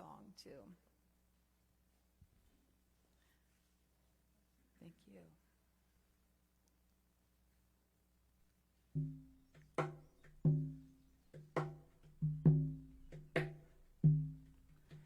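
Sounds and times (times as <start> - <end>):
percussive strikes: 9.0 - 15.0.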